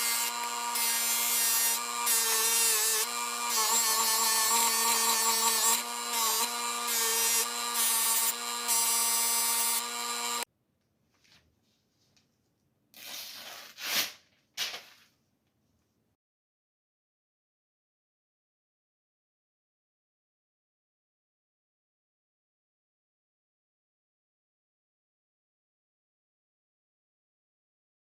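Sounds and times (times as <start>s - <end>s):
power tool whining and grinding: 0.0s - 10.5s.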